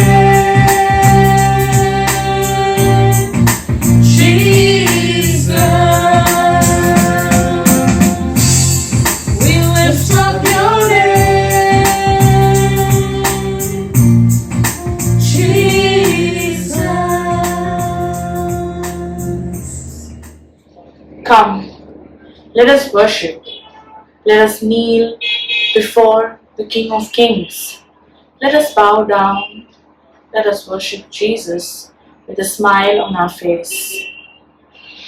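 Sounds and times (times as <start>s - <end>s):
person singing long notes: 0.0s - 3.4s, 4.0s - 8.5s, 9.4s - 14.0s, 14.8s - 20.2s
steady beat: 0.0s - 20.5s
electronic organ chords: 0.0s - 20.6s.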